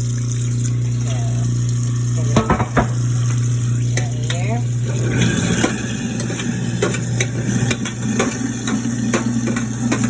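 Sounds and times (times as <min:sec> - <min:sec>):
garbage disposal motor humming: 0:00.0 - 0:10.0
food scraps knocking and clattering: 0:02.4 - 0:03.0.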